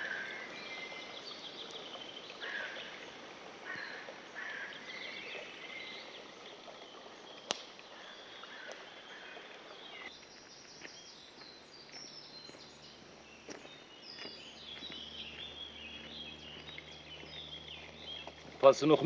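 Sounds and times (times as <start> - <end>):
songbirds chirping and trilling: 0.0 - 19.0.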